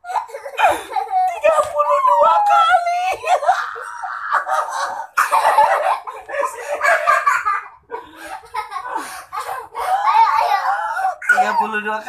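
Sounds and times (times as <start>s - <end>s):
people laughing: 0.6s - 10.6s.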